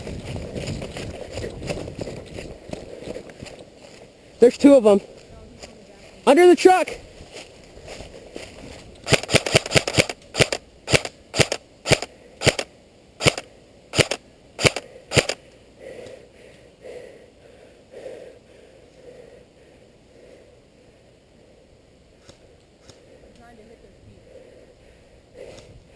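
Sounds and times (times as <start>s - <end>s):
airsoft gun shots: 9.1s - 15.4s.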